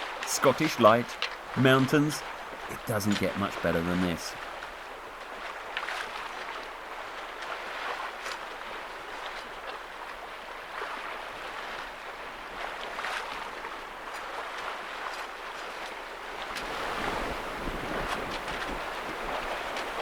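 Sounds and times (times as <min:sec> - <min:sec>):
water rushing along a hull: 0:00.0 - 0:20.0
wind noise: 0:16.6 - 0:20.0.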